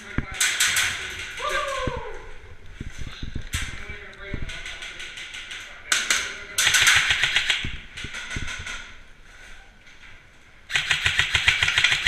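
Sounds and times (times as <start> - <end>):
airsoft rifle full-auto bursts: 6.6 - 7.7, 10.7 - 12.0.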